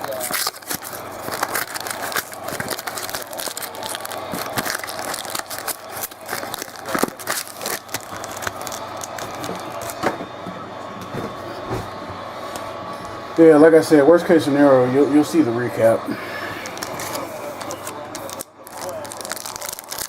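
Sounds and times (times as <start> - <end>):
wrappers crinkling and tearing: 0.0 - 10.1, 16.4 - 20.0.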